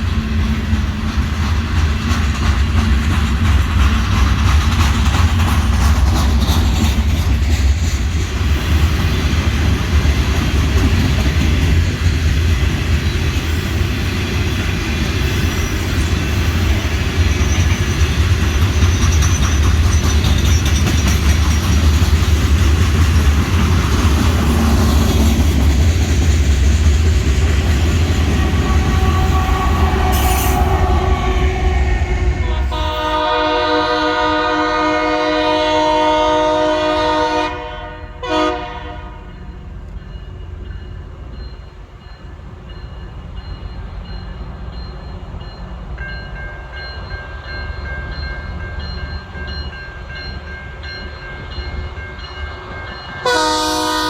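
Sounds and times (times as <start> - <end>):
train rumbling past: 0.0 - 54.0
locomotive air horn: 28.2 - 39.4, 53.2 - 54.0.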